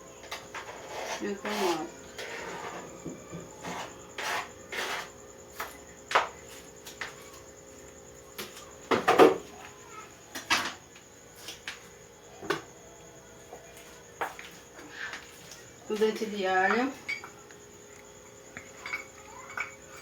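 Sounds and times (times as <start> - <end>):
faint steady hum: 0.0 - 20.0
kitchen utensils clattering: 18.7 - 20.0.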